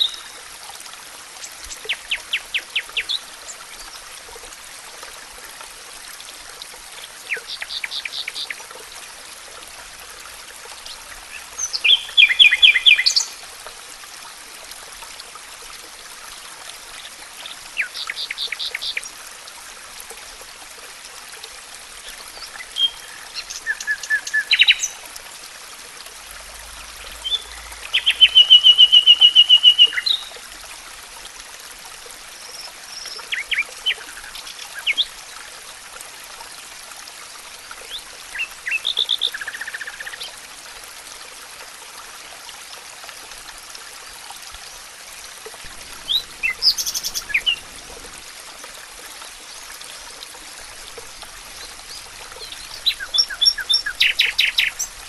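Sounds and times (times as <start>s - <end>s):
running water hiss: 0.0s - 55.0s
songbirds singing: 22.4s - 25.0s, 26.9s - 30.4s, 45.9s - 47.8s, 51.4s - 55.0s.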